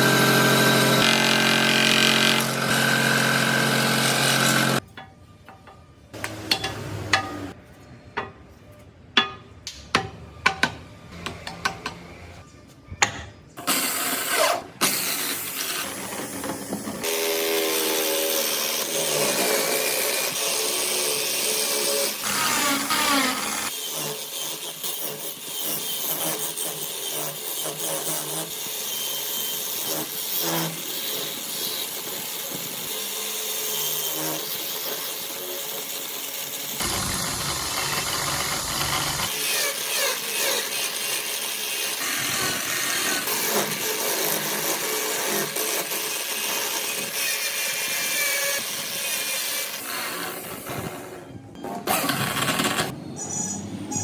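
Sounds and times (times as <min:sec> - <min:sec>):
woodworking power tools running: 0:00.0 - 0:04.8, 0:36.7 - 0:39.4.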